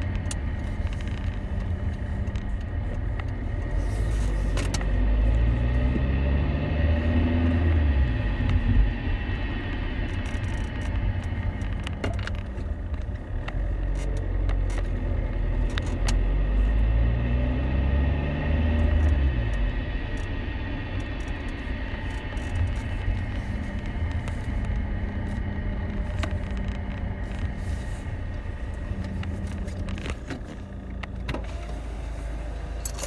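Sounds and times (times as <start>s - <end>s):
car engine running: 0.0s - 33.0s
road rumble: 0.0s - 33.0s.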